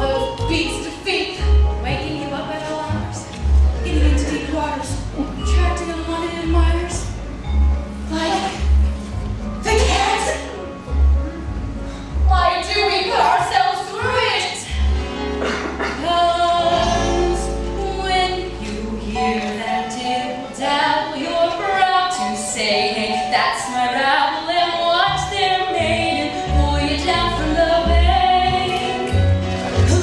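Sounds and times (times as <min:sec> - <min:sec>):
low bass notes: 0:02.8 - 0:13.0, 0:14.7 - 0:19.2
instrumental accompaniment: 0:14.7 - 0:20.8
women singing: 0:15.8 - 0:29.2.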